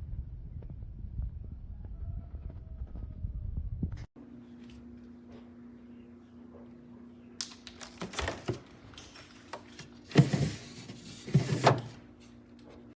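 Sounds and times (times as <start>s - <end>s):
refrigerator compressor humming: 4.2s - 12.9s.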